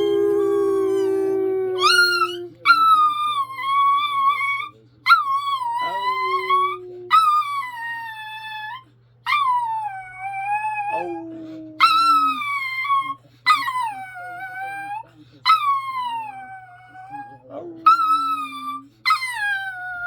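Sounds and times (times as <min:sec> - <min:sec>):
dog howling: 0:00.0 - 0:20.0.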